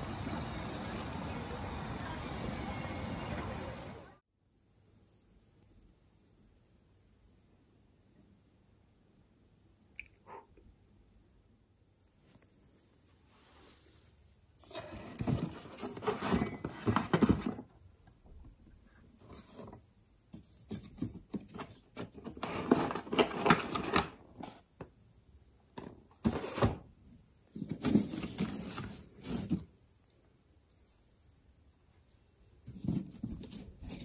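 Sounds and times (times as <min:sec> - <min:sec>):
objects being moved: 0:14.6 - 0:17.7.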